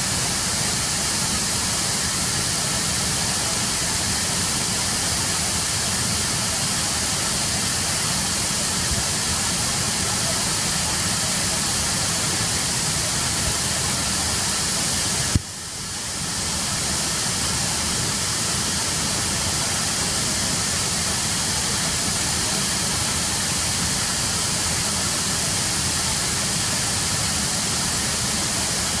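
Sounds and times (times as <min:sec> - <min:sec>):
waterfall rushing: 0:00.1 - 0:29.0.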